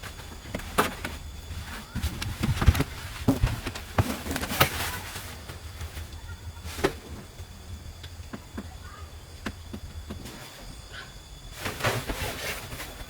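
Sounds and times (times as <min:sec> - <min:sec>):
steady low hum: 0:00.0 - 0:13.0
irregular knocks and clicks: 0:09.4 - 0:10.4.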